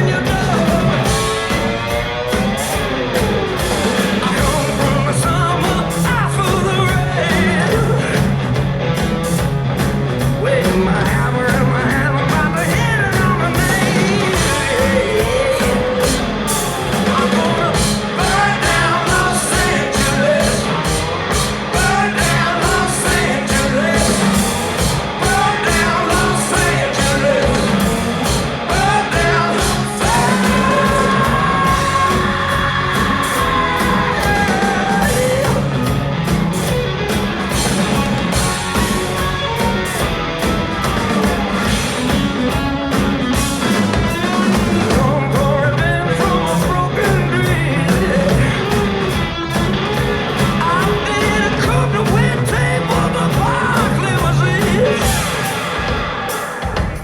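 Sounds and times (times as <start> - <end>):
person singing: 0.0 - 2.1, 3.2 - 8.4, 10.4 - 36.0, 44.2 - 49.2, 49.8 - 56.9
rock band playing live: 0.0 - 57.0.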